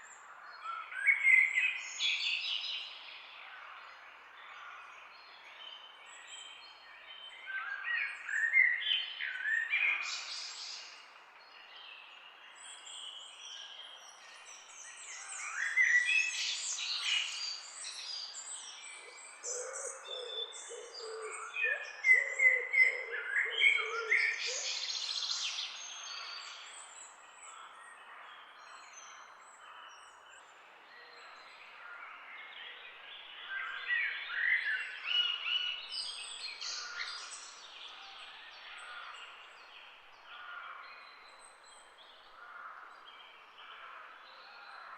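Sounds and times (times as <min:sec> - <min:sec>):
songbirds chirping and singing: 0:00.0 - 0:44.9.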